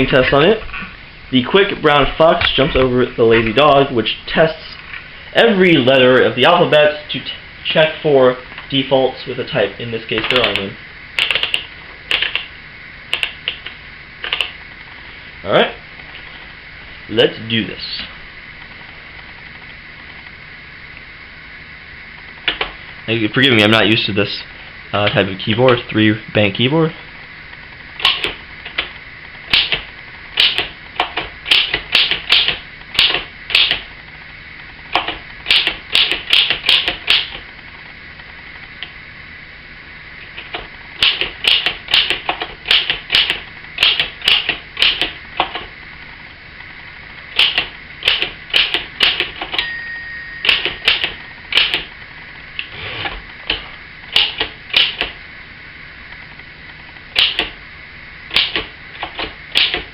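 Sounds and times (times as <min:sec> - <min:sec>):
typewriter type-bar strikes: 0:28.0 - 0:28.4, 0:29.5 - 0:29.8, 0:30.4 - 0:33.8, 0:35.0 - 0:37.4, 0:41.0 - 0:45.6, 0:47.4 - 0:49.6, 0:50.4 - 0:51.9, 0:54.1 - 0:55.1, 0:57.2 - 0:57.5, 0:58.3 - 0:59.9
typewriter bell ringing: 0:49.6 - 0:51.2.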